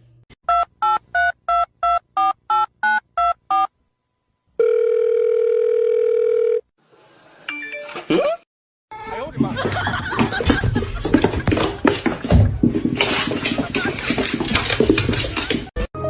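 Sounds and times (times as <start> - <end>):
steady telephone tone: 4.6 - 6.7.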